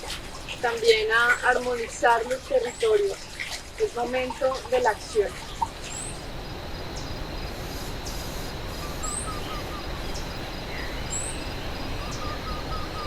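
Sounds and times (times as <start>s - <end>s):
high pulsing insect buzz: 4.0s - 13.0s
bird high upslurred call: 7.0s - 13.0s
lower whistled notes: 7.5s - 13.0s.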